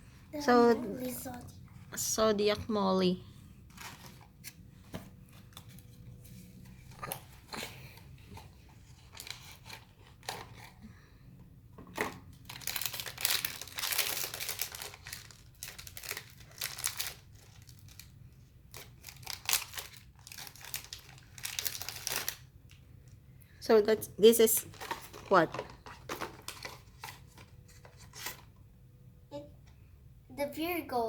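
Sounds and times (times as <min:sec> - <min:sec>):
packaging tearing and crinkling: 0:08.9 - 0:10.7, 0:12.2 - 0:18.1, 0:18.7 - 0:22.8.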